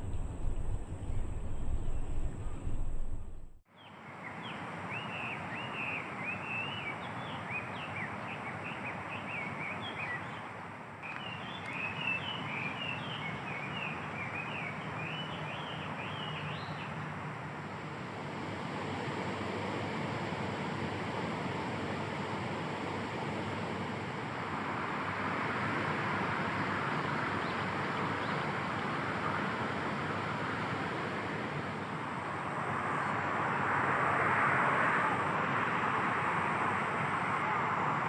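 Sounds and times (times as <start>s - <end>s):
low rumble: 0.0s - 3.6s
small birds chirping: 3.7s - 17.2s.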